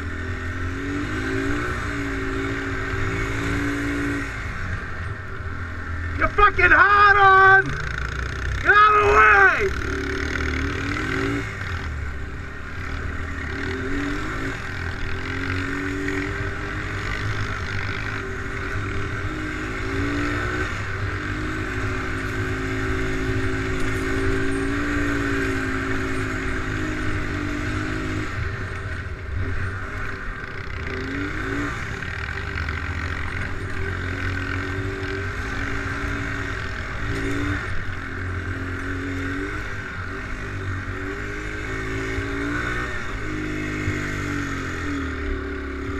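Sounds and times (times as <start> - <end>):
atv engine revving: 0.0 - 45.9.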